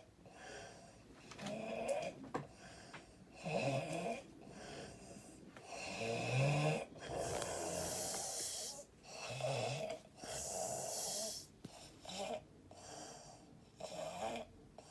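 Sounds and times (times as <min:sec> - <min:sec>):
woman snoring: 0:05.7 - 0:12.4.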